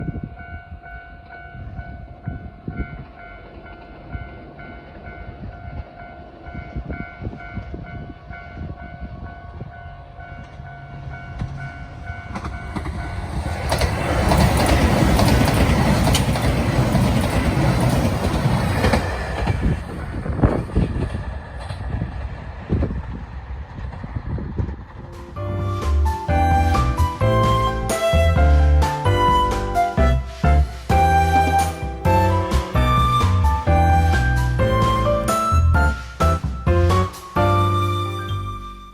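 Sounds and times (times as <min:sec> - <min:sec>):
level-crossing warning bells: 0:00.0 - 0:20.2
diesel train passing: 0:00.0 - 0:38.9
wheel clatter over rail joints: 0:11.4 - 0:28.2.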